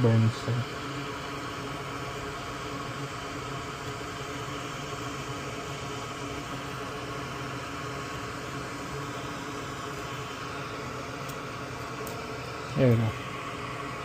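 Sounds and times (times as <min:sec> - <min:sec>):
small electric fan whirring: 0:00.0 - 0:14.0.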